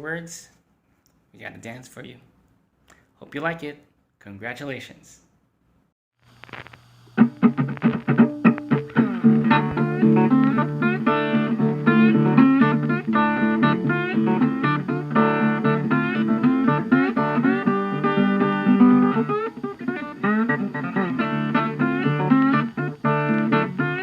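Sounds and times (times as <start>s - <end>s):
guitar background music: 7.2s - 24.0s.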